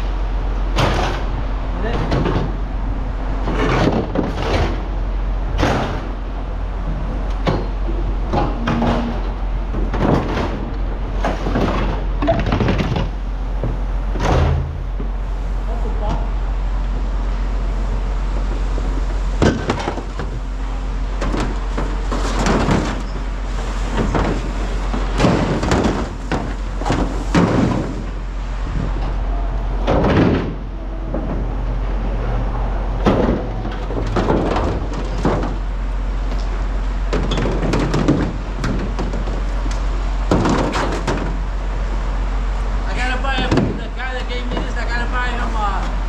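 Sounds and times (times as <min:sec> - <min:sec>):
steady low rumble: 0:00.0 - 0:40.4
scrap metal clanking and banging: 0:03.4 - 0:06.2, 0:07.4 - 0:15.2.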